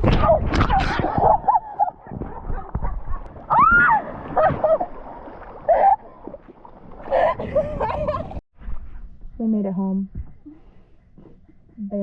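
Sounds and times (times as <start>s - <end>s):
river water splashing and gurgling: 3.2s - 7.6s
woman squealing: 3.5s - 4.8s.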